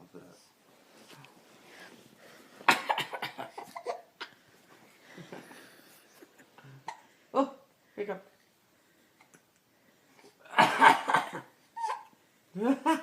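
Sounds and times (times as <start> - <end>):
man coughing: 2.7 - 4.0, 10.5 - 11.5.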